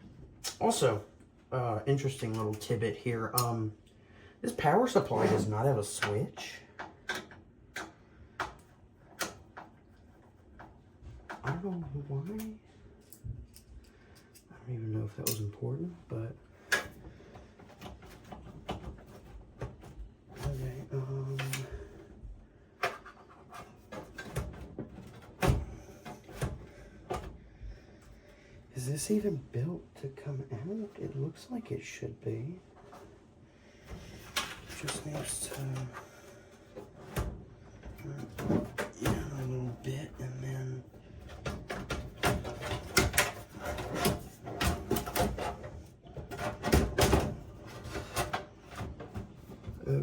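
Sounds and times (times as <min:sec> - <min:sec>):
knocks clunks and scrapes of metal: 0:05.0 - 0:07.4, 0:22.8 - 0:28.1, 0:33.8 - 0:40.3, 0:40.9 - 0:50.0.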